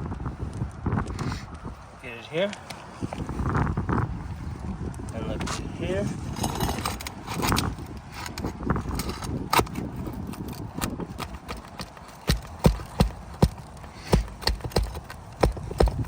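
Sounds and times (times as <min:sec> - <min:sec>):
knocks on a shingle roof: 0:11.2 - 0:16.0.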